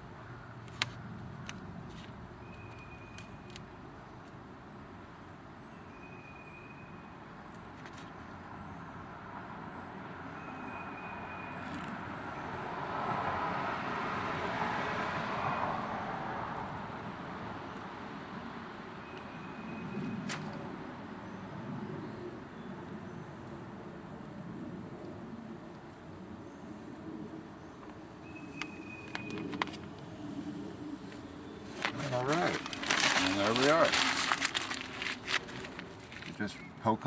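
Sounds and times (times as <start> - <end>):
background traffic hum: 0.0 - 37.0
passing vehicle: 8.5 - 23.0.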